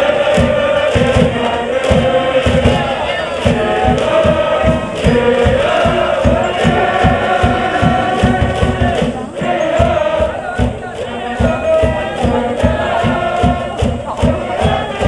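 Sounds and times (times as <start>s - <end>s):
crowd chanting: 0.0s - 15.0s
drum beat: 0.0s - 15.0s.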